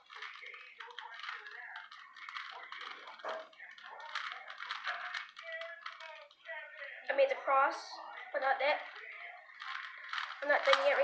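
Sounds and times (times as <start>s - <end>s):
puzzle cube clicking and rattling: 0.0s - 6.6s, 8.8s - 11.0s.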